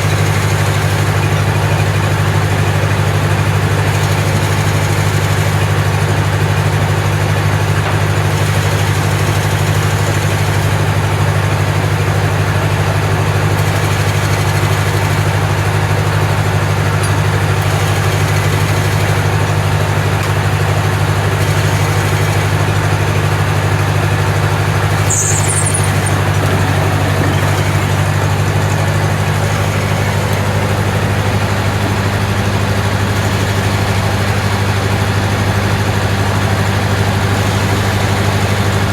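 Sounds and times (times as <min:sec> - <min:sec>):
engine humming steadily: 0:00.0 - 0:38.9
brief high squeak: 0:24.9 - 0:28.2.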